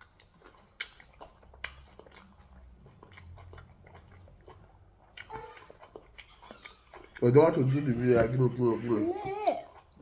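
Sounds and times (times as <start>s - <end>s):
person chewing food: 0.0s - 10.0s.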